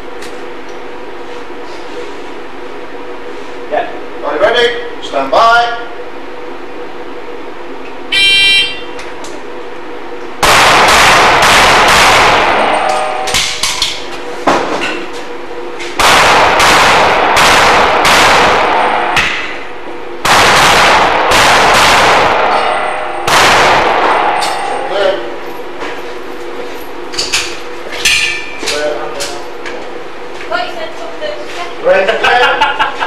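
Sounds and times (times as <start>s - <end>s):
shot timer beep: 8.1s - 8.9s
pistol shots echoing: 10.4s - 13.8s, 16.0s - 19.6s, 20.2s - 24.8s.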